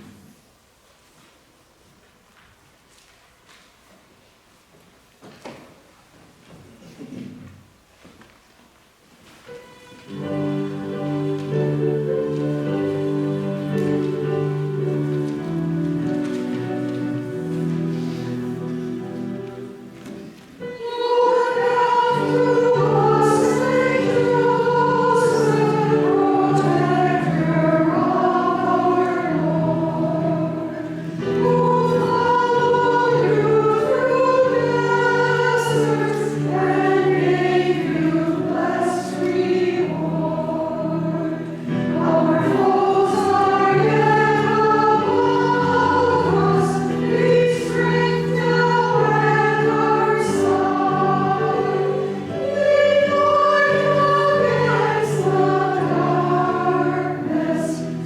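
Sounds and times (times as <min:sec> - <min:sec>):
choir singing a hymn: 0:09.5 - 0:58.0.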